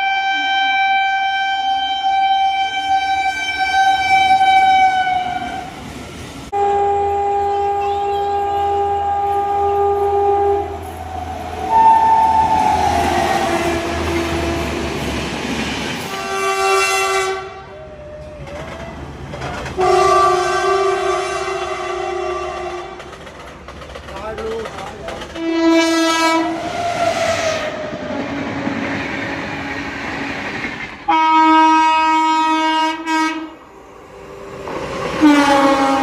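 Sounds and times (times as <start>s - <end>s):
locomotive horn blasts: 0.0s - 5.7s, 6.5s - 10.9s, 11.6s - 15.0s, 16.0s - 17.8s, 19.8s - 23.0s, 25.4s - 26.6s, 31.1s - 33.6s, 35.2s - 36.0s
train passing rumble: 1.2s - 36.0s.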